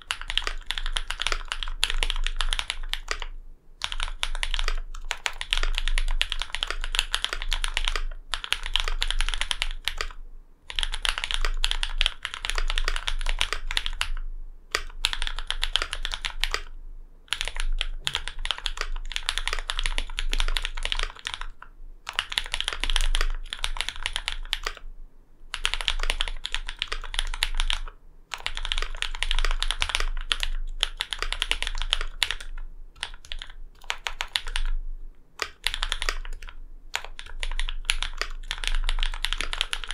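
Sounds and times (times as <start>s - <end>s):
typing on mechanical keyboard: 0.0s - 16.7s, 17.3s - 24.8s, 25.5s - 34.8s, 35.4s - 39.9s.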